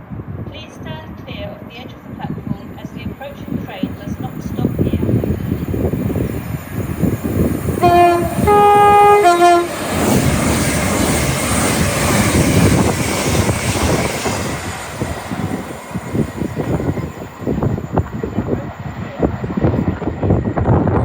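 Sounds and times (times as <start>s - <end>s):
train passing on rails: 0.0s - 21.0s
train horn: 7.8s - 9.8s.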